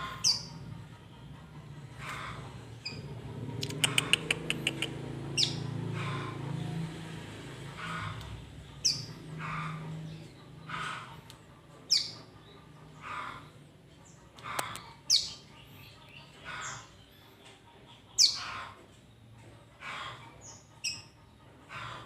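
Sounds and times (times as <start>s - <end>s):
raspy bird calls: 0.0s - 0.8s, 1.8s - 6.6s, 7.7s - 19.0s, 19.7s - 22.0s
young songbird chirping: 2.8s - 5.7s, 8.8s - 9.2s, 11.9s - 12.6s, 14.6s - 17.0s.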